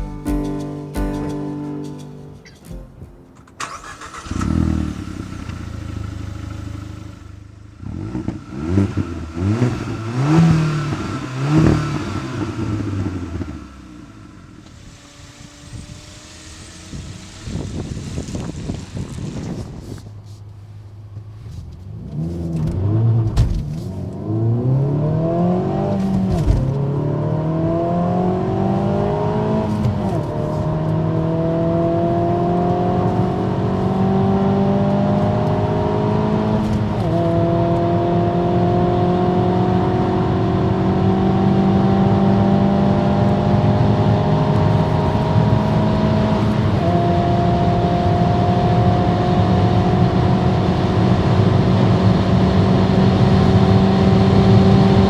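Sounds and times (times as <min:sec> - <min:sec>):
car engine accelerating through gears: 0:03.6 - 0:20.3, 0:21.0 - 0:55.0.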